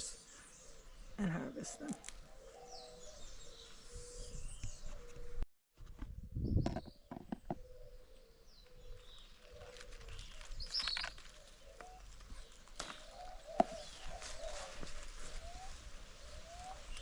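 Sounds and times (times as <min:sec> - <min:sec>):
songbirds chirping: 0:00.0 - 0:05.4, 0:06.3 - 0:17.0.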